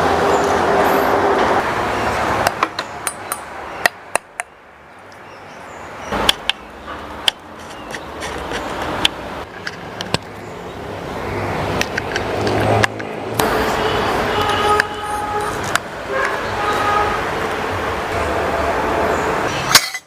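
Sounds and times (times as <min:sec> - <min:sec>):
traffic-like noise: 0:00.0 - 0:20.0
sharp clicks and knocks: 0:02.4 - 0:04.5, 0:06.1 - 0:10.4, 0:11.7 - 0:13.5.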